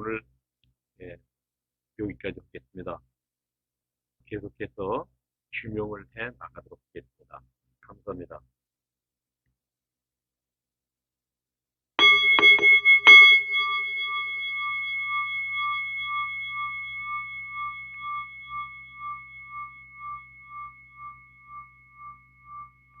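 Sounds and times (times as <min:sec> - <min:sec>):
bell-like metal chime ringing: 0:12.0 - 0:23.0.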